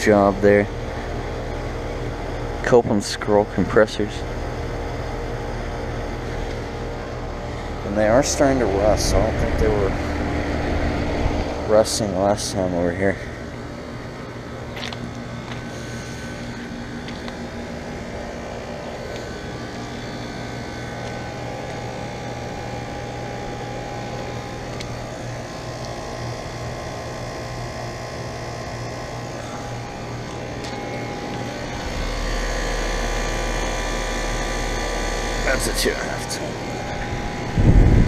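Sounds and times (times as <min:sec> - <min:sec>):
compressor hum: 0:00.0 - 0:38.0
condenser fans rushing: 0:00.0 - 0:38.0
deep rumble: 0:29.8 - 0:35.7, 0:36.6 - 0:38.0.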